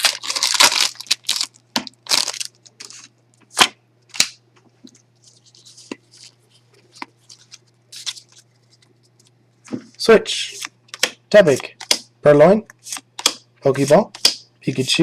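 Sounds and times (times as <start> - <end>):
foil wrapper crinkling and tearing: 0.0 - 3.1, 7.2 - 8.8.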